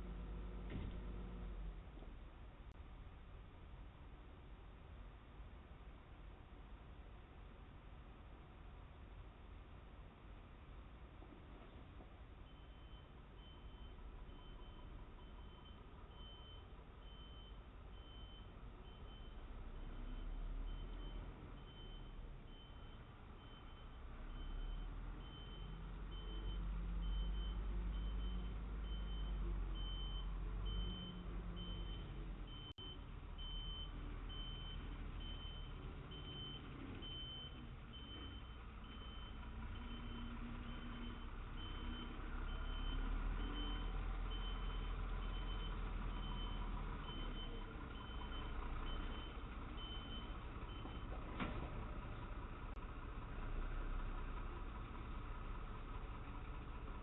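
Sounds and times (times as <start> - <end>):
diesel engine rumble: 0.0 - 57.0
reversing alarm beeping: 12.5 - 51.1.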